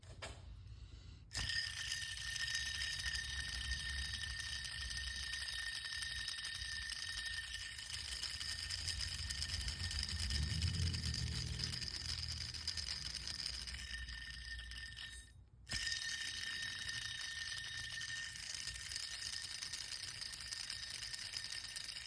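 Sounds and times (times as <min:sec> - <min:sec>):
pulley bearing whining: 0:01.3 - 0:22.0
low rumble: 0:09.0 - 0:12.7.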